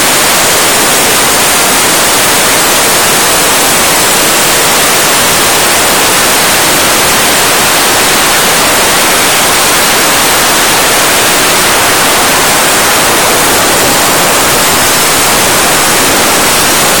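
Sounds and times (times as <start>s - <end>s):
soda blaster hissing: 4.8s - 17.0s.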